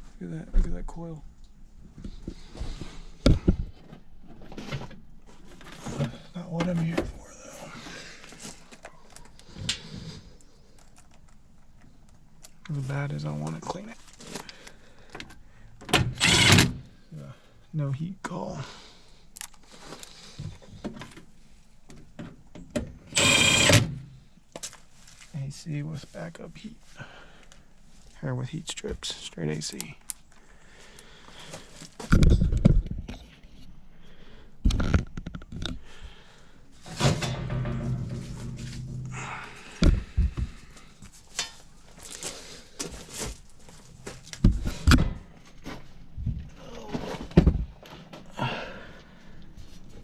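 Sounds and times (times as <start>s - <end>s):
steady low hum: 0.0s - 50.0s
small electric motor whirring: 16.1s - 16.7s, 23.2s - 24.0s
metal clatter: 36.8s - 39.2s
heavy thumps and knocks: 37.0s - 40.7s.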